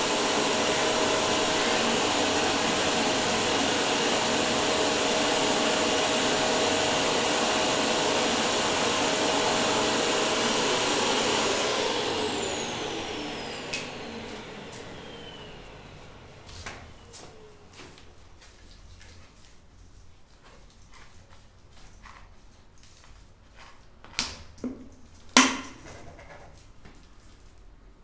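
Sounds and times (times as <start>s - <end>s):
vacuum cleaner running: 0.0s - 18.4s.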